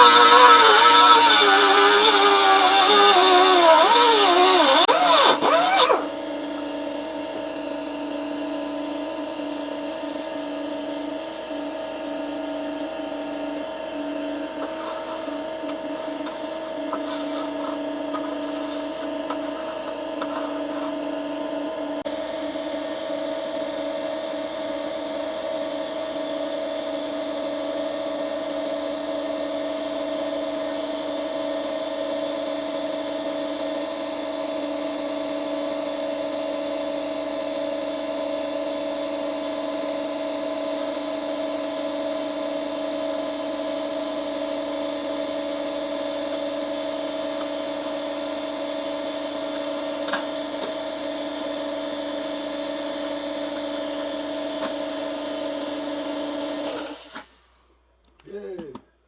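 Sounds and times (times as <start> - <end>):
electric tool motor humming: 0.0 - 6.2, 14.5 - 21.5.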